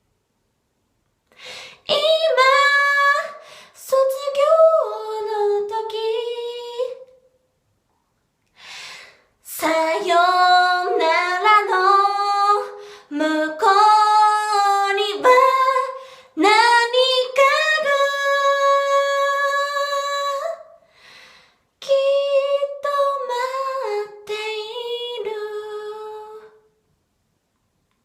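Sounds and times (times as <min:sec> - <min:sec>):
a cappella choir singing: 0:09.5 - 0:18.0.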